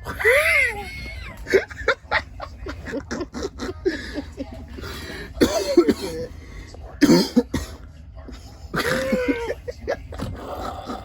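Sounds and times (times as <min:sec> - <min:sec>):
stifled laughter: 0:00.0 - 0:04.6
people coughing: 0:02.7 - 0:06.4, 0:07.0 - 0:07.8, 0:08.7 - 0:11.0.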